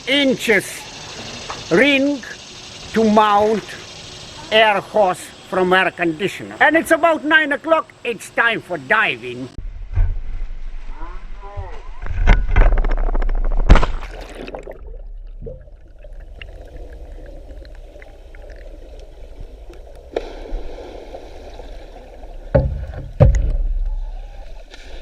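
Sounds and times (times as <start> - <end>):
water splashing and sloshing: 12.1 - 25.0
muffled rush of water: 13.8 - 25.0
sharp knock: 22.5 - 23.8.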